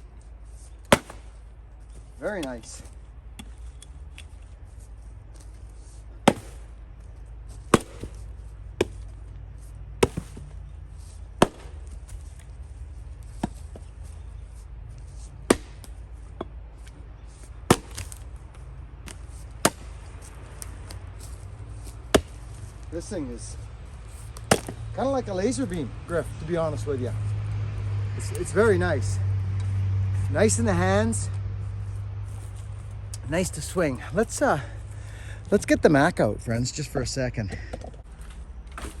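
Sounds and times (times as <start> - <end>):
axe striking firewood: 0.6 - 1.6, 5.4 - 6.8, 7.5 - 9.3, 10.0 - 12.5, 13.2 - 14.2, 15.0 - 18.4, 19.0 - 23.4, 24.1 - 25.0, 38.7 - 39.0.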